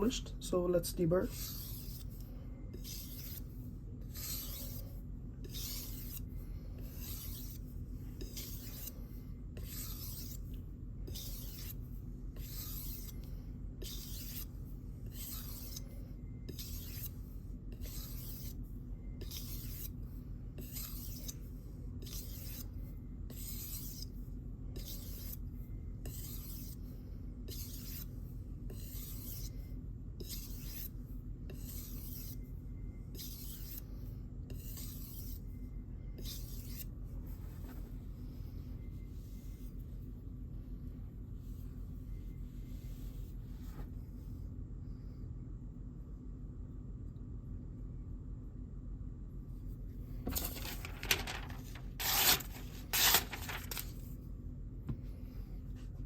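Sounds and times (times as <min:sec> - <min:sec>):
knife scraping on whetstone: 0:01.3 - 0:09.0, 0:09.6 - 0:10.5, 0:11.1 - 0:11.8, 0:12.4 - 0:13.2, 0:13.8 - 0:15.9, 0:16.5 - 0:18.6, 0:19.2 - 0:20.0, 0:20.6 - 0:21.4, 0:22.0 - 0:22.7, 0:23.3 - 0:24.1, 0:24.8 - 0:25.4, 0:26.1 - 0:26.8, 0:27.5 - 0:28.1, 0:28.7 - 0:29.5, 0:30.2 - 0:30.9, 0:34.5 - 0:35.4, 0:52.0 - 0:53.8.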